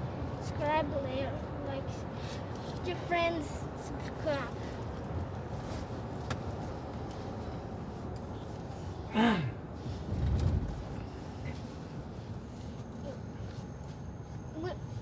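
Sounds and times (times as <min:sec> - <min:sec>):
road rumble inside car: 0:02.8 - 0:14.8.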